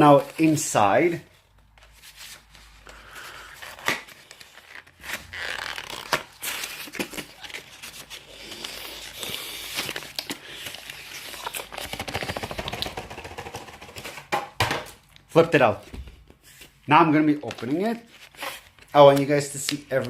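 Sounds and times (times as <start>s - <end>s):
packaging rustling: 1.8s - 14.2s.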